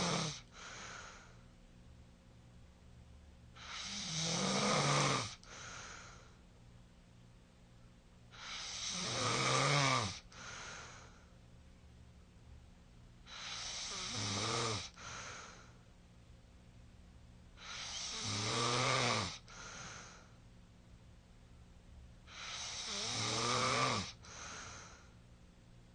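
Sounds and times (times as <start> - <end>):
person snoring: 0.0 - 1.3, 3.6 - 6.3, 8.4 - 11.1, 13.3 - 15.7, 17.6 - 20.3, 22.3 - 25.0.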